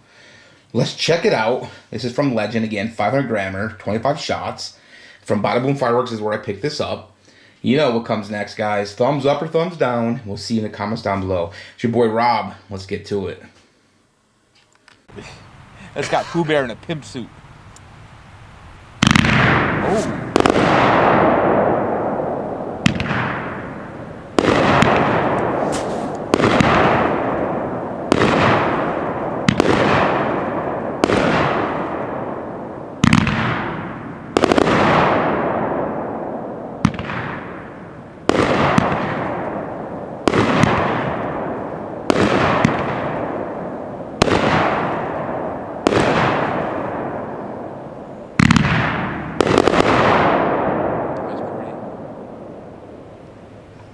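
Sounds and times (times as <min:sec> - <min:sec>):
firework cake bangs: 0:19.0 - 0:47.7, 0:48.4 - 0:52.0
firework hissing tail: 0:19.1 - 0:21.6, 0:22.7 - 0:27.3.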